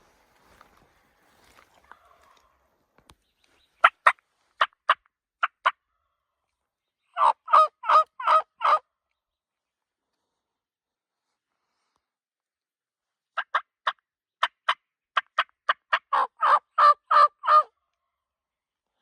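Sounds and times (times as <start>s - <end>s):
turkey clucking: 7.2s - 8.8s, 13.4s - 14.6s, 15.2s - 17.7s
turkey yelps: 7.2s - 8.8s, 15.9s - 17.7s.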